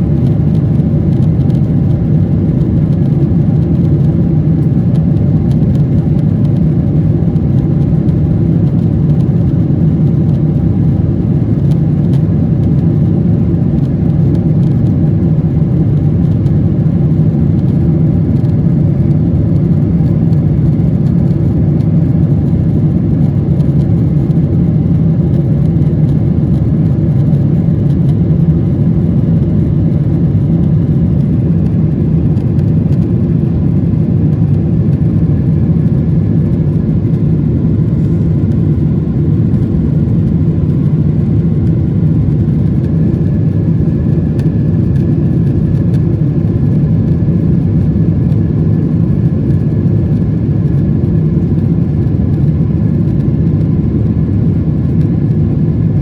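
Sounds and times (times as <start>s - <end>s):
airliner engine drone: 0.0s - 56.0s.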